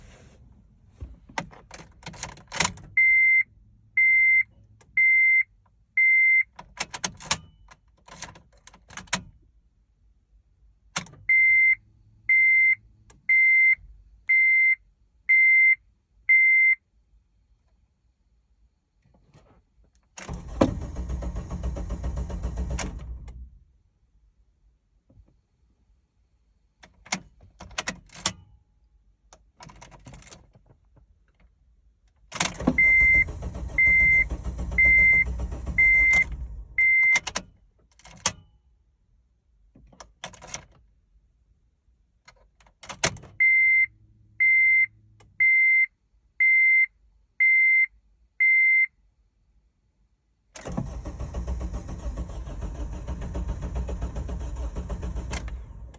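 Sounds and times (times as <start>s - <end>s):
dashboard warning chime beeping: 2.8s - 6.6s, 11.2s - 16.8s, 32.6s - 37.4s, 43.4s - 48.9s
car engine cranking without starting: 20.2s - 23.6s, 32.2s - 38.4s, 50.6s - 55.9s.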